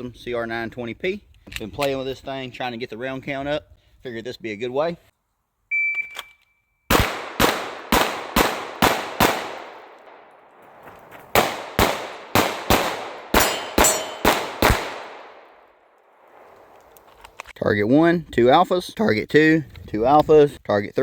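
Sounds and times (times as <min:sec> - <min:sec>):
shot timer beep: 0:05.7 - 0:06.5
pistol shots: 0:06.9 - 0:10.7, 0:11.3 - 0:16.6
steel plates ringing: 0:13.4 - 0:14.5.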